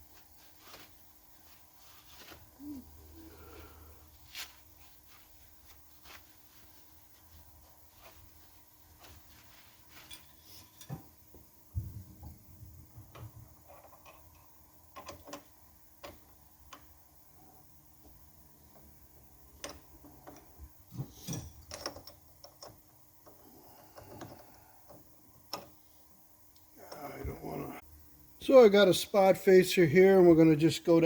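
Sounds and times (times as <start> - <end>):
faint steady hum: 0.0 - 31.0
tools clicking and knocking: 13.1 - 16.9, 19.6 - 20.5, 21.2 - 23.4.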